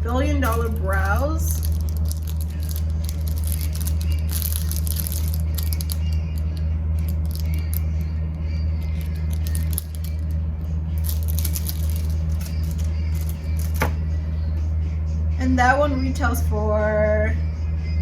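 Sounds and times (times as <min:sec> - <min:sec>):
steady low hum: 0:00.0 - 0:18.0
plastic packaging crinkling: 0:00.4 - 0:08.2, 0:08.8 - 0:10.4, 0:11.0 - 0:14.0.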